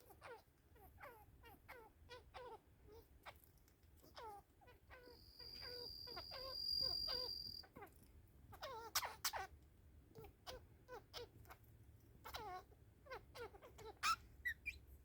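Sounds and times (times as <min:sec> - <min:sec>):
budgerigar chirping: 0:04.2 - 0:07.7, 0:08.6 - 0:09.5, 0:12.2 - 0:14.9.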